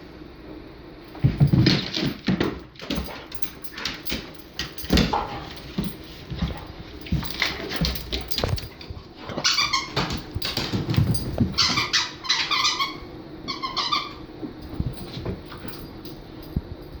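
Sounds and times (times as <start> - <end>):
dog whining: 11.5 - 14.3.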